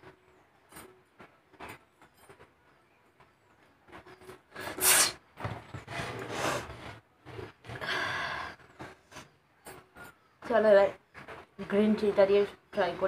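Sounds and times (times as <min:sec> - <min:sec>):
sharp nasal burst: 0:04.6 - 0:05.2
rough sniffing and breathing: 0:05.9 - 0:07.0.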